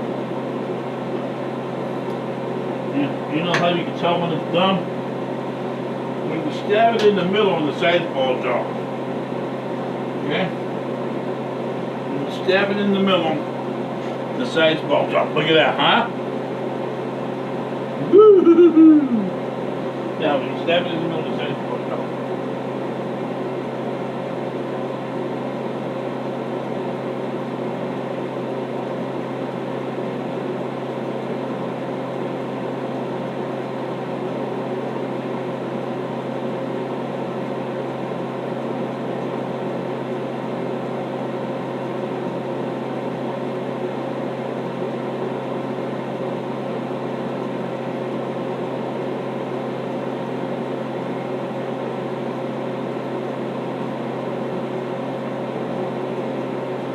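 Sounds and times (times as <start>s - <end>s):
fan whirring hum: 0.0s - 56.9s.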